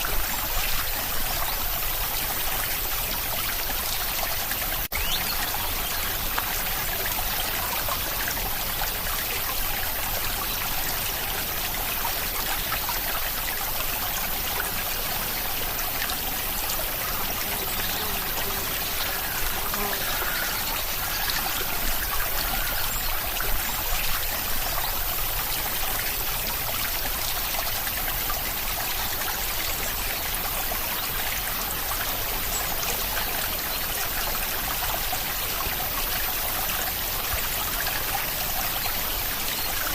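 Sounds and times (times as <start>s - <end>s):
steady rain: 0.0s - 39.9s
water trickling and dripping: 0.0s - 39.9s.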